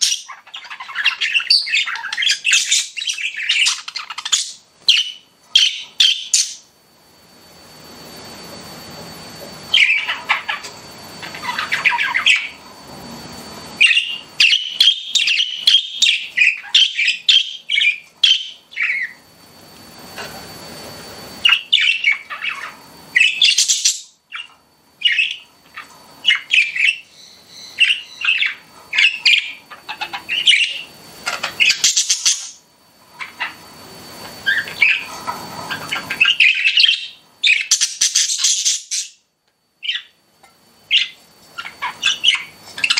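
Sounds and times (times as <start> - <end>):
budgerigars chirping and squawking: 0.0 - 6.6, 9.7 - 12.6, 13.8 - 19.2, 21.4 - 32.6, 33.2 - 33.6, 34.4 - 39.2, 39.8 - 40.2, 40.9 - 42.9.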